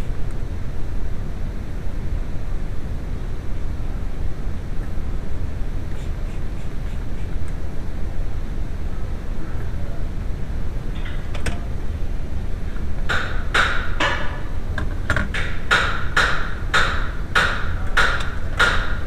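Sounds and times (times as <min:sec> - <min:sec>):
sharp ringing knocks: 0:13.1 - 0:14.5, 0:15.1 - 0:19.0.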